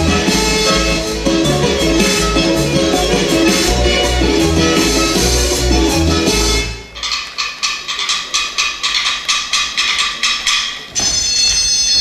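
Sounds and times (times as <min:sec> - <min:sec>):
dance music: 0:00.0 - 0:06.9
wood block percussion clicking: 0:06.9 - 0:12.0.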